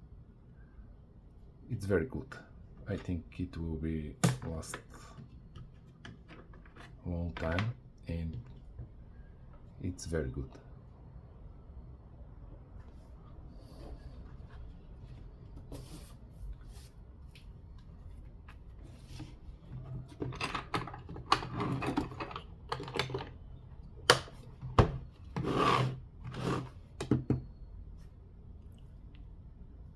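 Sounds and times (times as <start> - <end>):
tools rubbing and scraping: 18.8 - 22.8, 25.3 - 26.8.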